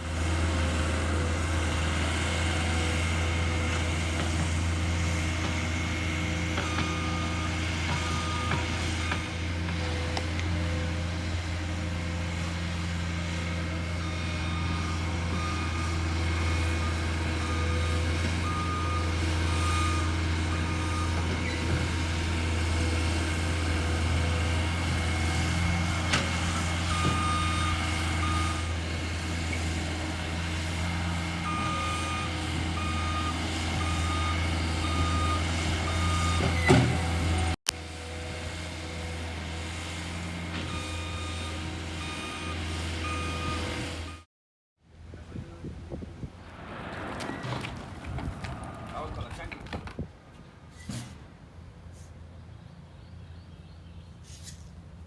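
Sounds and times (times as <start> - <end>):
construction machinery engine humming: 0.0 - 37.6, 46.2 - 50.6
reversing alarm beeping: 31.5 - 36.7, 40.7 - 44.3.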